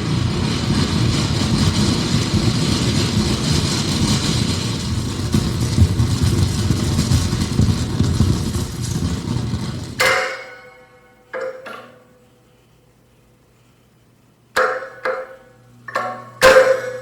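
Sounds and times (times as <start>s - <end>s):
dense rumbling noise: 0.0s - 10.0s
struck object ringing: 10.0s - 12.1s, 14.6s - 17.0s.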